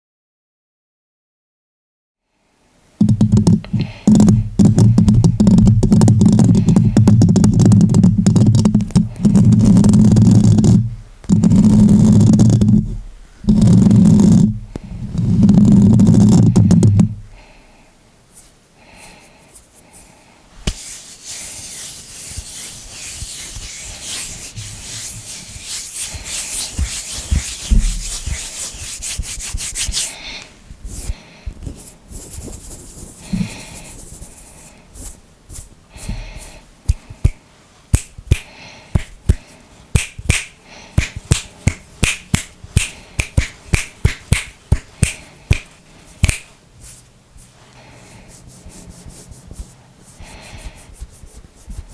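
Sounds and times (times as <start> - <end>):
hands rubbing together: 19.4 - 30.2, 30.8 - 47.0
sharp finger clicks: 38.0 - 39.4, 40.0 - 46.5.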